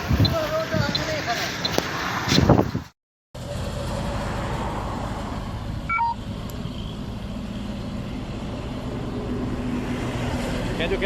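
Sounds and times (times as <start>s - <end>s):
road and wind noise: 0.0s - 11.0s
vehicle engine running: 3.4s - 11.0s
falling electronic beep: 5.9s - 6.2s.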